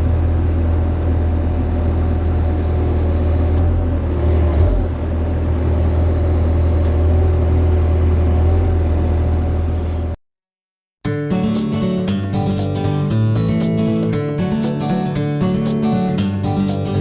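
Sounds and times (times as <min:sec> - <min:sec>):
excavator diesel engine running: 0:00.0 - 0:10.2.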